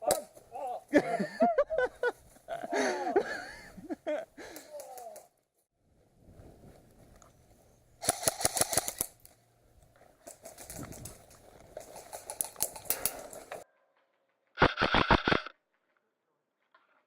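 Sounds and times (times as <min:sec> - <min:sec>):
airsoft guns firing bursts: 0:08.0 - 0:09.2.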